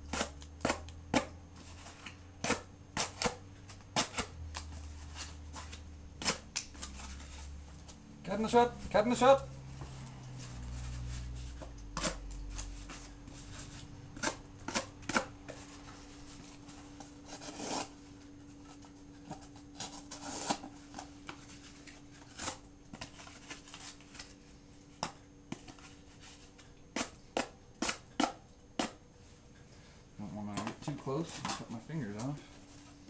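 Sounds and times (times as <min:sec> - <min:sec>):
faint steady hum: 0:00.0 - 0:33.0
knife slicing cardboard: 0:00.1 - 0:03.4, 0:04.0 - 0:07.4, 0:17.2 - 0:17.9.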